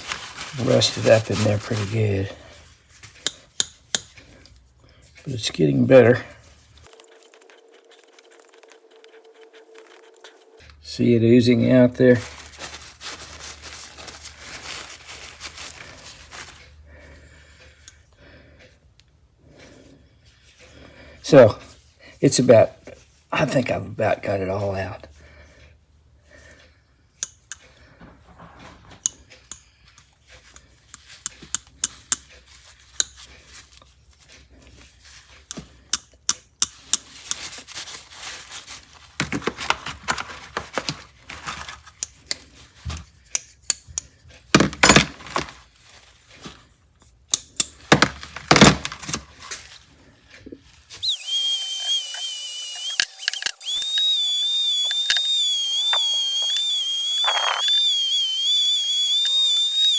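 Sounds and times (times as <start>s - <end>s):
metallic clicks and scraping of pliers: 3.1s - 5.6s, 27.2s - 27.8s, 29.0s - 37.6s, 41.9s - 45.0s, 47.0s - 48.4s, 51.0s - 59.9s.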